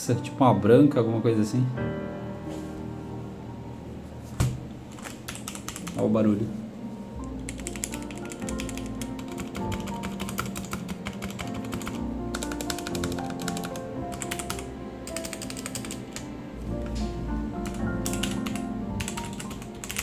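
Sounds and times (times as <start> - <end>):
background music: 0.0 - 20.0
mechanical keyboard keys clacking: 4.9 - 6.0, 7.4 - 16.2, 17.6 - 20.0.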